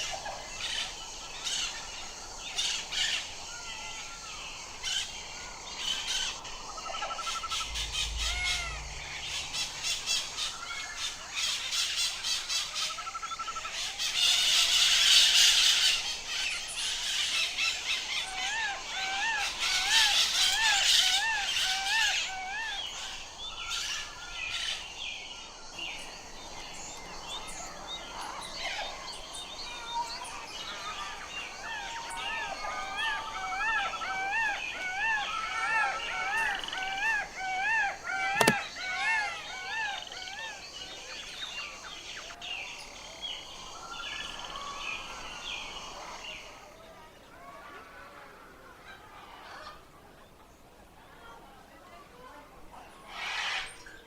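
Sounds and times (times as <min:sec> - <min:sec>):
parrots chirping and squawking: 0:07.5 - 0:10.0.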